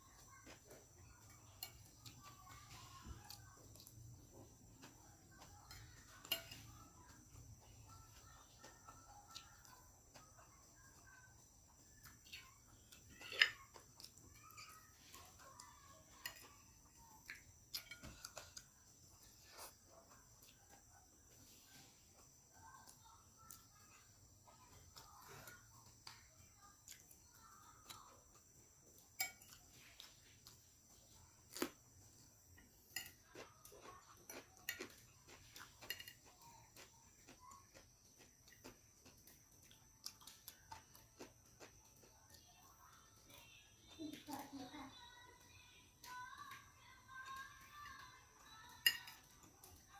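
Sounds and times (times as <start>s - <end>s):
chewing: 0.0s - 44.4s
cutlery clicking on a plate: 17.3s - 18.5s, 29.2s - 29.7s, 34.2s - 36.4s, 48.8s - 49.8s.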